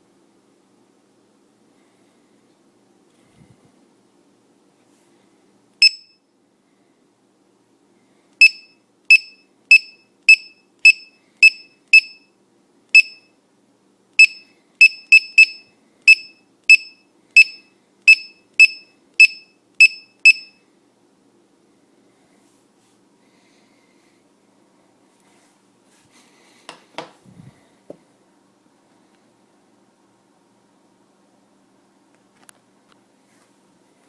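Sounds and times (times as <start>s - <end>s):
short high buzzer beeps: 5.8s - 6.2s, 8.4s - 12.3s, 13.0s - 13.3s, 14.2s - 20.6s.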